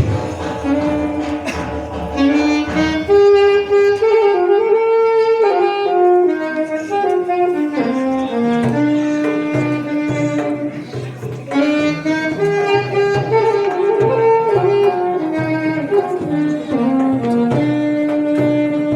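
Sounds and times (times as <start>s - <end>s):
shehnai playing slow melody: 0.0s - 18.9s.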